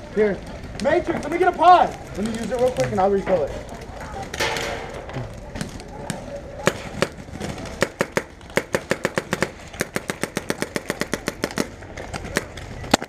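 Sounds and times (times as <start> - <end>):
paintball marker firing: 6.6 - 13.0.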